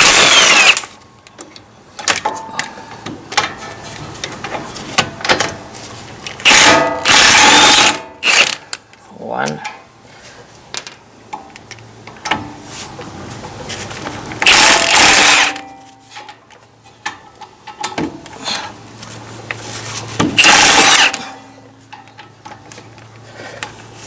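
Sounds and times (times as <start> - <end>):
impact wrench hammering: 6.4 - 8.6, 14.4 - 15.7, 20.2 - 21.5.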